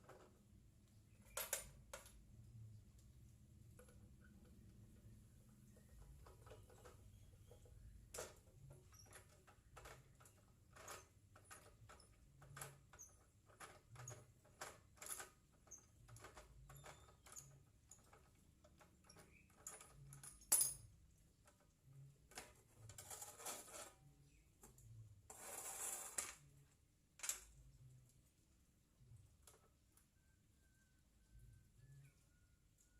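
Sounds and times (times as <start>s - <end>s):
metal parts and tools clicking: 3.8s - 28.0s.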